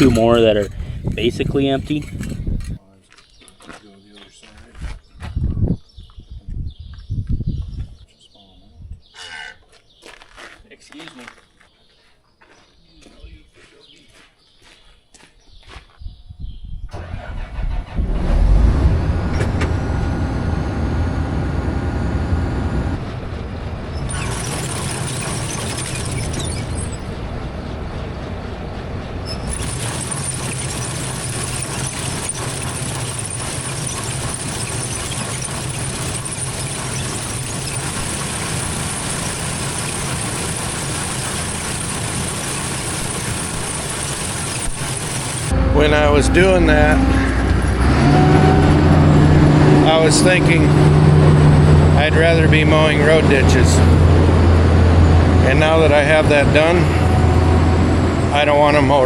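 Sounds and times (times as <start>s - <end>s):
engine running: 0.0s - 2.8s, 16.9s - 59.0s.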